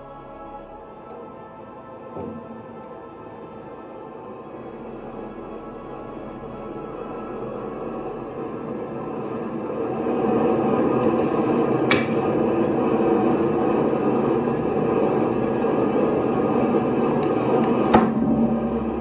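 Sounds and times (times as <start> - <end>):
forge rushing noise: 4.7 - 19.0.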